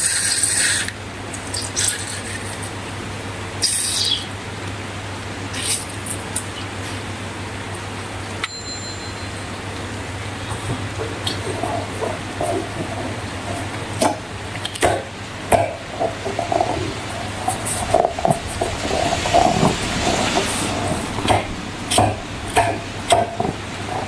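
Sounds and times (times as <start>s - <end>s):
steady low hum: 0.0s - 24.0s
slime squelching by hand: 10.4s - 24.0s.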